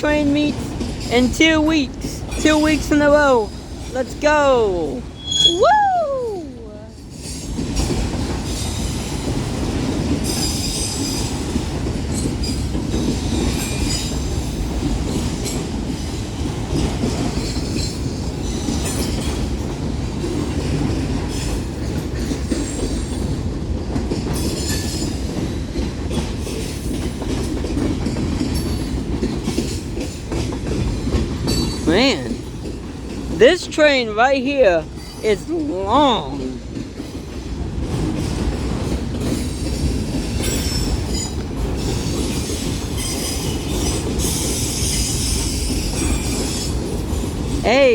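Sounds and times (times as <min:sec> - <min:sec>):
freight train wheels rumbling: 0:00.0 - 0:47.9
high-pitched wheel squeals: 0:05.2 - 0:06.4.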